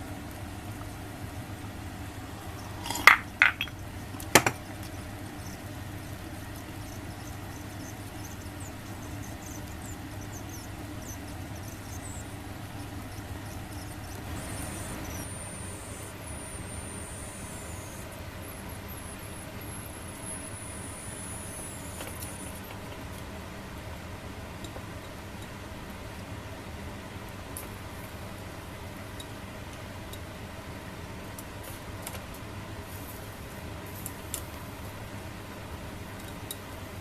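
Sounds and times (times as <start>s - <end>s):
steady low hum: 0.0s - 37.0s
tableware clinking: 2.7s - 3.8s.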